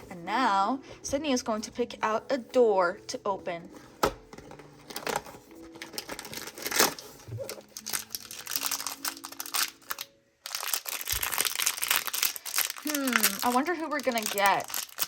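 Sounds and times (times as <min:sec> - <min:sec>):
soft background music: 0:00.0 - 0:15.0
cardboard packaging crinkling: 0:04.5 - 0:15.0.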